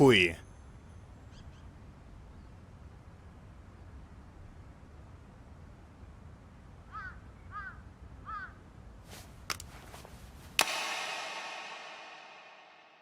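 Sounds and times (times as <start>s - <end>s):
crow cawing: 6.9s - 8.6s
sharp ringing strike: 10.6s - 13.0s.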